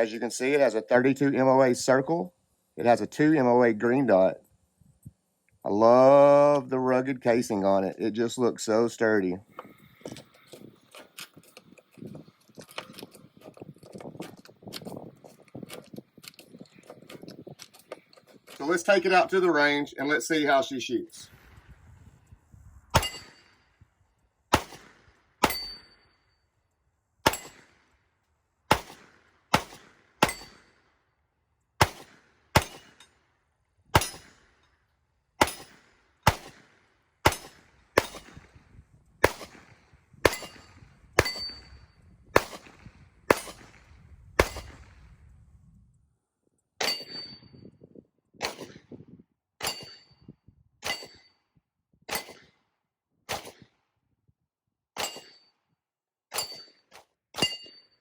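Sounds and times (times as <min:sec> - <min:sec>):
pistol shots: 0:23.0 - 0:23.5, 0:24.5 - 0:25.9, 0:27.2 - 0:27.8, 0:28.7 - 0:30.8, 0:31.8 - 0:33.0, 0:34.0 - 0:34.5, 0:35.4 - 0:38.6, 0:39.2 - 0:41.7, 0:42.3 - 0:45.0, 0:48.4 - 0:48.9, 0:53.3 - 0:53.7
metallic ring: 0:23.0 - 0:23.6, 0:25.4 - 0:26.4, 0:40.3 - 0:42.0, 0:46.8 - 0:47.6, 0:49.6 - 0:50.2, 0:50.8 - 0:51.4, 0:55.0 - 0:55.6, 0:56.3 - 0:58.0.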